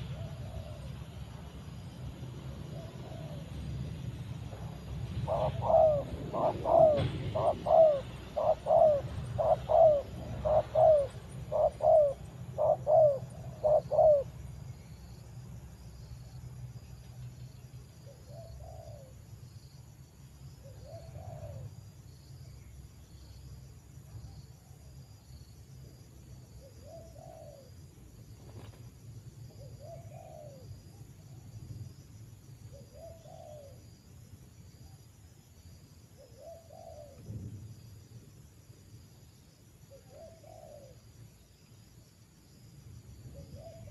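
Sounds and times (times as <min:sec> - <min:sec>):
dove cooing: 0:00.0 - 0:01.1, 0:02.5 - 0:03.6, 0:05.0 - 0:14.4, 0:18.1 - 0:19.1, 0:20.6 - 0:21.7, 0:26.6 - 0:27.7, 0:29.5 - 0:31.0, 0:32.7 - 0:33.9, 0:36.2 - 0:37.3, 0:39.9 - 0:41.0, 0:43.3 - 0:43.9.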